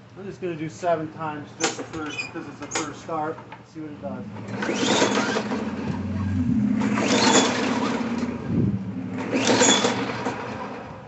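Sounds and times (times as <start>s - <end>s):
recoil starter rope whirring: 4.1s - 10.8s.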